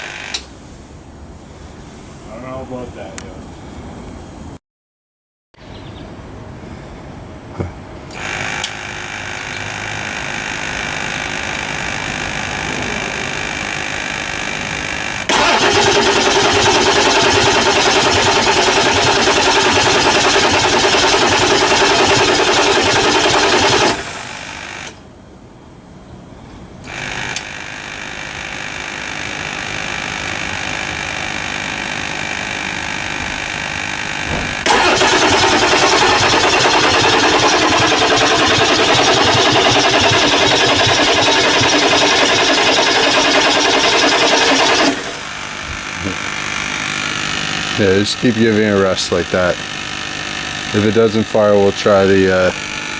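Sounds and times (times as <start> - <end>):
starter cranking diesel engine: 8.1 - 25.0, 28.7 - 52.9.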